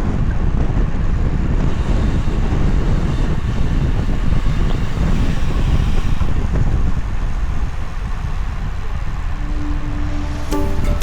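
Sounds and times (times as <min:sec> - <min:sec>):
wind rush on microphone: 0:00.0 - 0:10.9.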